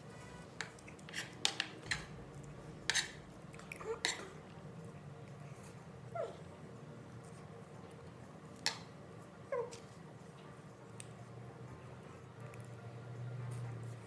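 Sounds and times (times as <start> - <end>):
utensil scraping a plate: 0.6 - 2.1, 2.8 - 3.3
chewing and mouth noises: 3.4 - 5.8, 12.2 - 12.9.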